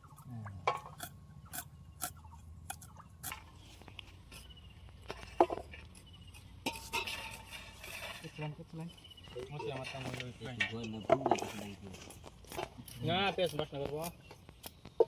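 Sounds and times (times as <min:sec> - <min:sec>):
utensils clinking against pots: 0:06.6 - 0:08.5.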